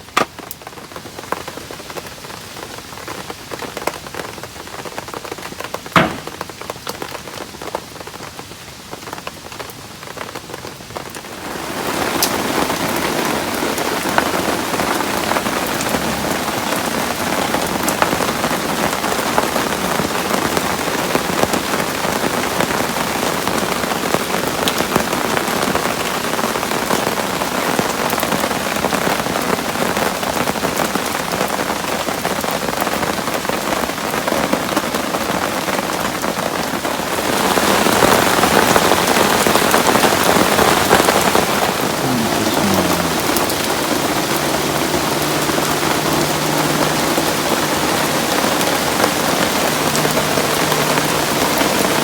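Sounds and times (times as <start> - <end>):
heavy rain on a tent: 0.0 - 52.0
small knocks: 6.0 - 6.6
loud dense hiss: 41.9 - 46.7.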